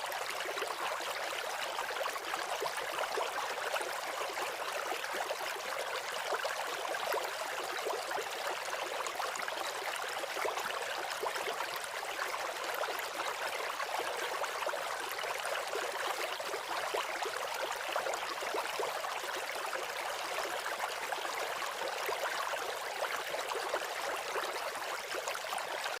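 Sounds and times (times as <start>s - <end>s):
rushing trickling water: 0.0s - 26.0s.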